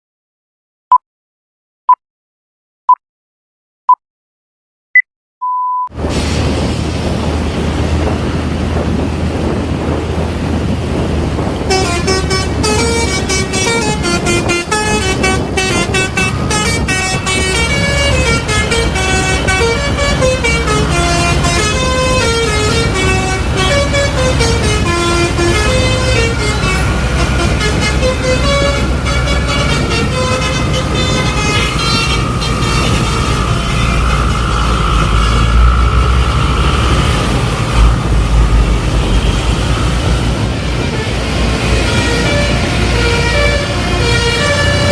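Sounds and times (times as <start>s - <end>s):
bus engine hum: 6.0s - 44.9s
bus horn playing a tune: 11.5s - 37.0s, 37.8s - 44.9s.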